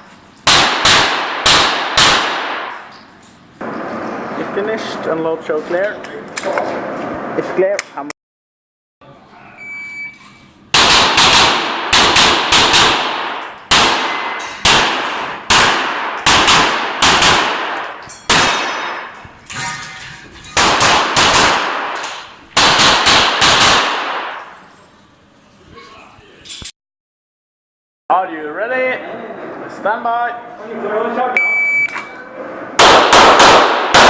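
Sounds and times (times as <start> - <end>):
pistol shots ringing: 0.4 - 2.9, 10.7 - 24.6, 32.8 - 34.0.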